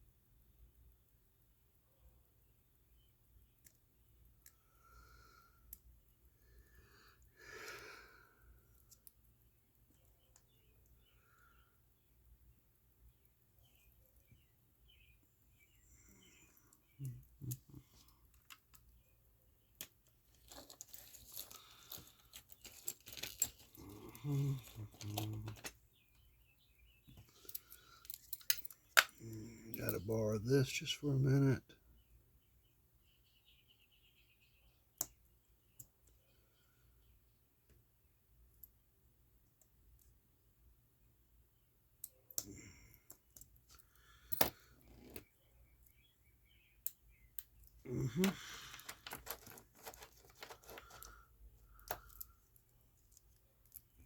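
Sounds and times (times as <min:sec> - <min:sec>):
rustling and crinkling: 0:19.8 - 0:26.3, 0:47.8 - 0:54.0
watch tools clicking and tapping: 0:27.0 - 0:29.2, 0:46.9 - 0:51.1, 0:51.8 - 0:54.0.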